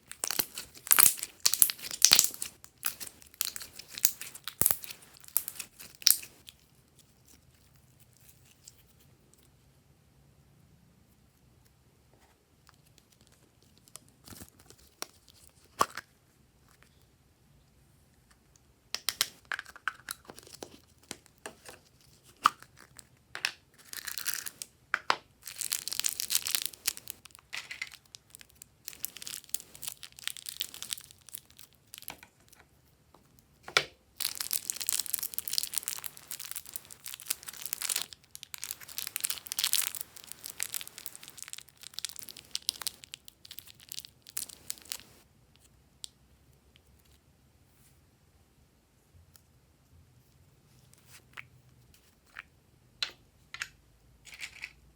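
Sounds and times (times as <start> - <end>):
slime squished by hand: 0.0 - 6.4, 34.2 - 45.2.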